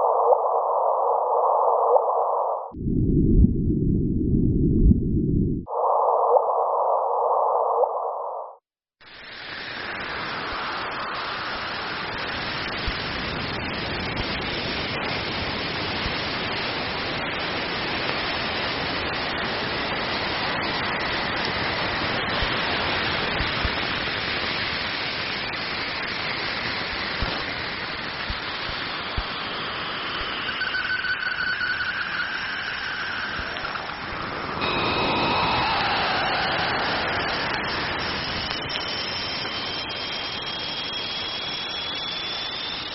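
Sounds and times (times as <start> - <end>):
static-like hiss: 9.0 - 42.9
faint whistling tones: 28.9 - 42.9.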